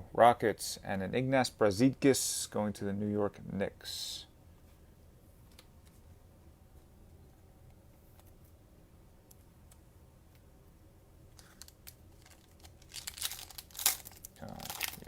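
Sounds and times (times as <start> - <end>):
plastic wrapper crinkling: 11.4 - 15.0.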